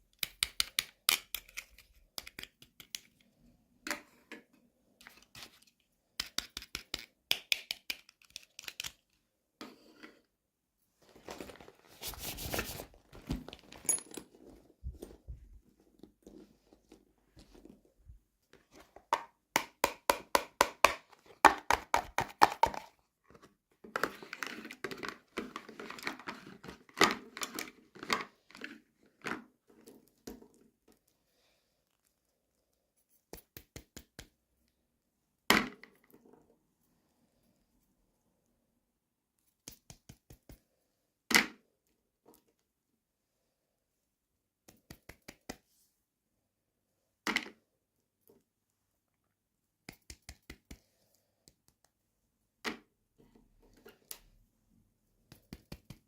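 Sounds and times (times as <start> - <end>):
packaging clicks and taps: 0.1 - 3.3, 18.6 - 28.2.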